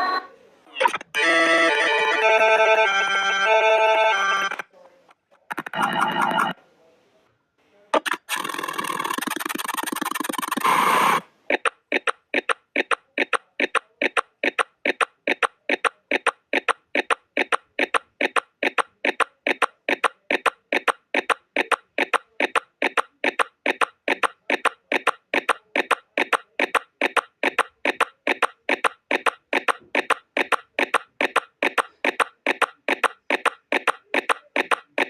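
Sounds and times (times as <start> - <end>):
timer clock ticking: 8.1 - 10.7, 11.5 - 35.0.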